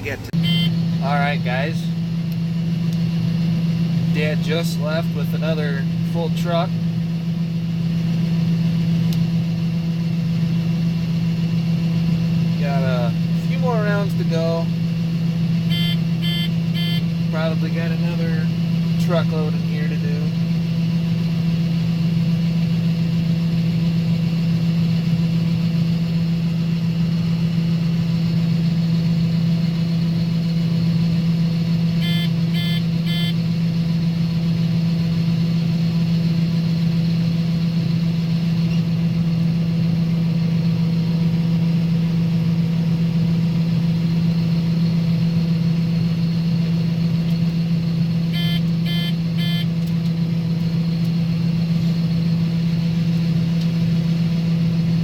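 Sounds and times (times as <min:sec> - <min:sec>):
combine harvester engine drone: 0:00.0 - 0:55.0
short electronic beeps: 0:00.4 - 0:00.8, 0:15.7 - 0:17.1, 0:32.0 - 0:33.4, 0:48.3 - 0:49.7.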